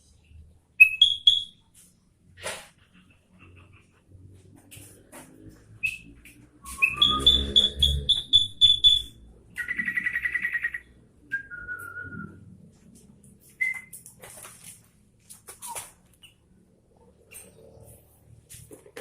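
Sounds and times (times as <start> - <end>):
bird singing whistled notes: 0.8 - 1.6, 5.8 - 12.4, 13.6 - 13.9.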